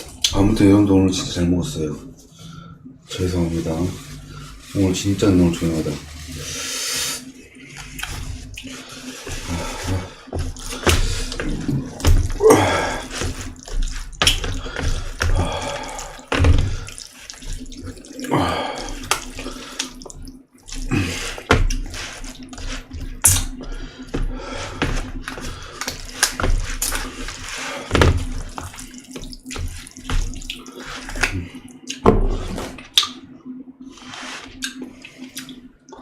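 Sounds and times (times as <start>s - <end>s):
faint steady hum: 0.0s - 36.0s
wet chewing and smacking: 10.2s - 24.3s, 24.9s - 27.5s, 28.1s - 32.0s, 34.5s - 36.0s.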